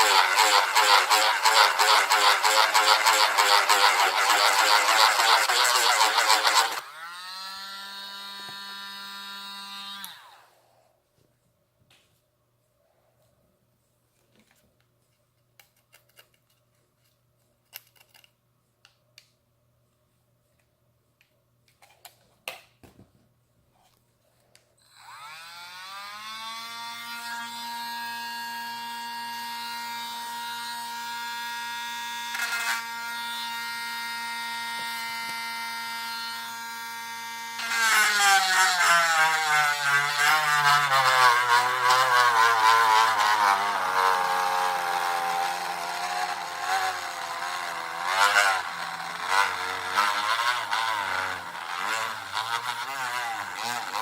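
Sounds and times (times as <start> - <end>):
small power tool spinning: 0.0 - 10.8, 24.8 - 54.0.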